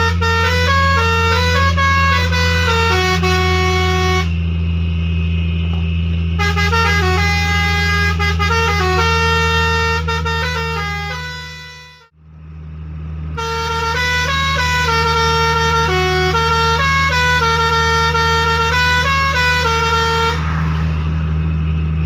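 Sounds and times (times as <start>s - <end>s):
musical air horn playing a tune: 0.0s - 4.4s, 6.4s - 12.1s, 13.4s - 20.6s
steady low hum: 0.0s - 22.0s.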